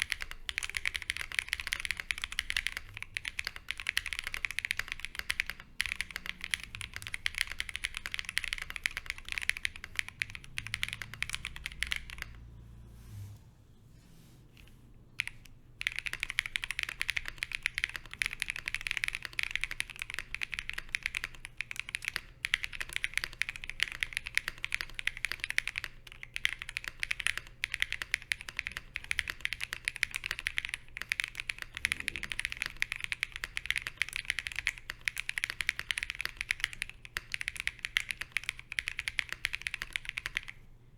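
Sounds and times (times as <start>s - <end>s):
fast mechanical keyboard typing: 0.0s - 12.6s, 15.2s - 40.6s.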